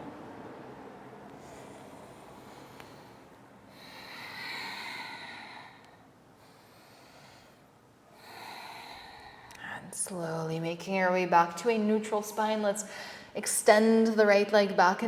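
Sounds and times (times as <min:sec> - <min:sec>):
person breathing slowly: 0:01.3 - 0:09.7.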